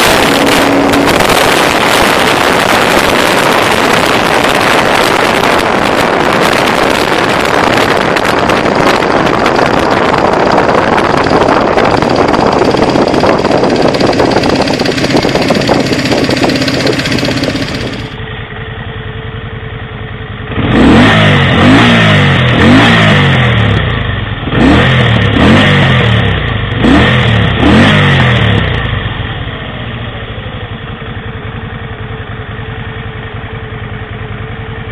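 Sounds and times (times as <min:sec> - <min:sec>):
wind noise: 0:00.0 - 0:18.2
motorcycle engine revving and idling: 0:00.0 - 0:34.9.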